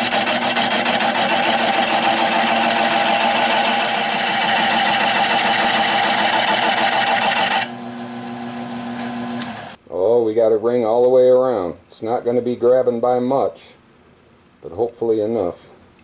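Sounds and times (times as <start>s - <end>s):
lathe motor hum: 0.0s - 9.8s
lathe tool cutting wood: 0.0s - 9.8s.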